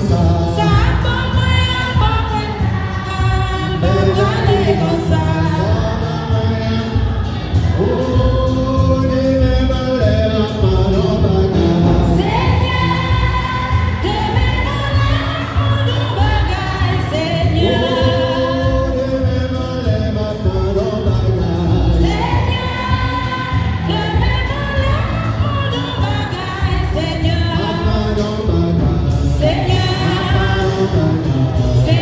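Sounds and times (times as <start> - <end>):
choir singing a hymn: 2.2 - 8.9, 10.4 - 27.8.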